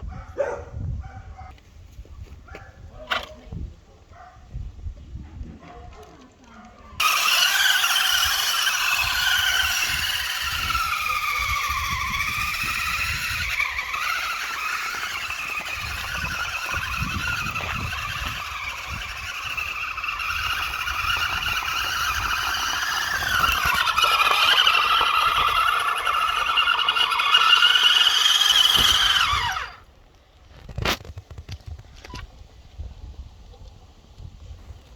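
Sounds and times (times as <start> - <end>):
electric toy car motor whining: 7.0 - 29.9.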